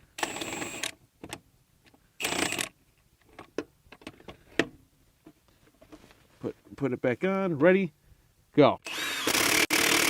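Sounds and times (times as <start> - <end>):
impact wrench bursts: 2.2 - 2.7, 8.8 - 10.0.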